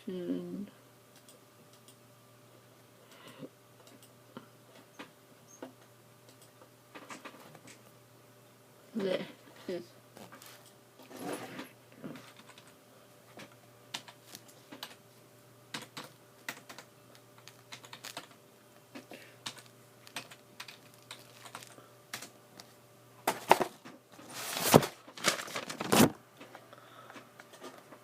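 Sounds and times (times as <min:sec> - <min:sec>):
faint steady hum: 0:00.0 - 0:28.0
computer keyboard typing: 0:12.2 - 0:12.8, 0:13.9 - 0:15.0, 0:15.7 - 0:22.4.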